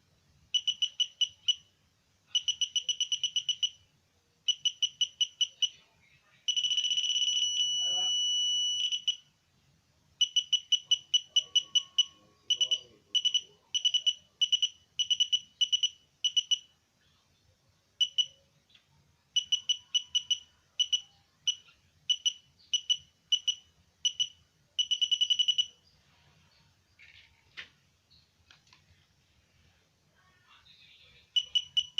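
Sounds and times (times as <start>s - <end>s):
metal detector beeping: 0.6s - 1.7s, 2.3s - 3.8s, 4.5s - 5.8s, 6.5s - 9.2s, 10.2s - 16.7s, 18.0s - 18.4s, 19.4s - 25.8s, 31.4s - 31.9s.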